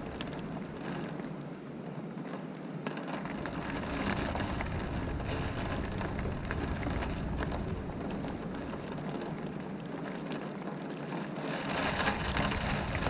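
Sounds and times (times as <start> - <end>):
low wind rumble: 0.0 - 10.6, 11.4 - 13.0
rain hissing: 3.4 - 9.9, 11.5 - 13.0.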